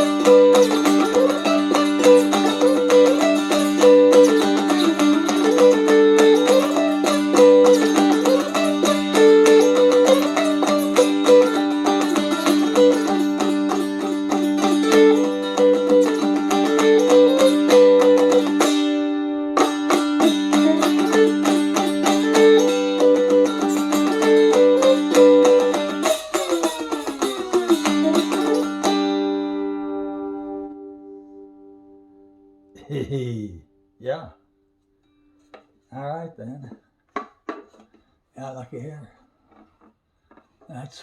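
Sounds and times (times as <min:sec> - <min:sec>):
dulcimer playing a tune: 0:00.0 - 0:31.6.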